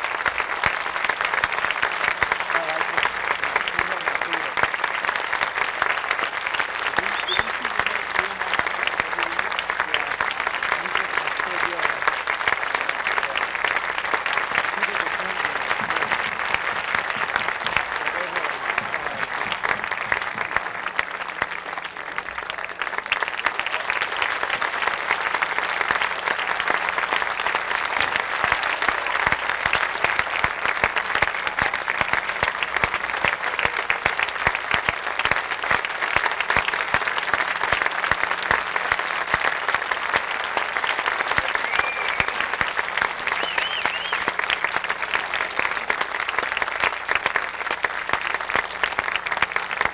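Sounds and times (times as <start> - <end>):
audience applauding: 0.0 - 49.9
whistle: 7.0 - 7.6, 41.6 - 42.4, 43.3 - 44.4.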